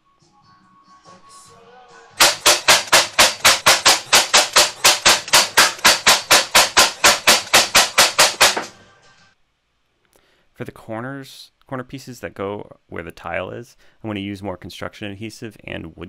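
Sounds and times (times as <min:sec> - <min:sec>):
brad nailer firing: 0:02.2 - 0:08.8.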